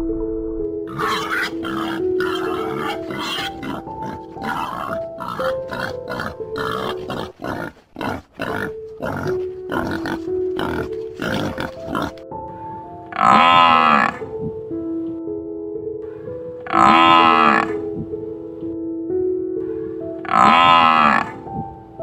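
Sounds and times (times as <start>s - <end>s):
background music with held notes: 0.0s - 22.0s
pigs grunting: 0.9s - 12.2s, 13.1s - 14.4s, 16.7s - 17.9s, 20.2s - 21.5s.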